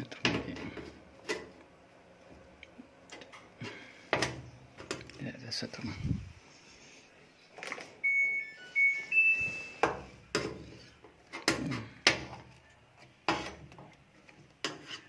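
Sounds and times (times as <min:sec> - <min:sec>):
washing machine beeps: 0:08.0 - 0:10.2.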